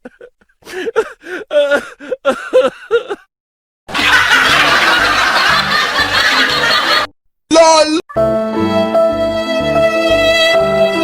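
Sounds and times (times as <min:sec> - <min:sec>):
laughter: 0:03.9 - 0:07.1
snickering laugh: 0:03.9 - 0:07.1.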